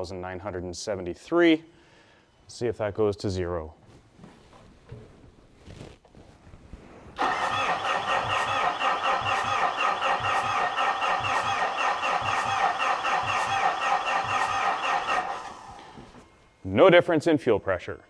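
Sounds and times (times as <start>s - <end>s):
starter cranking diesel engine: 7.2s - 16.2s.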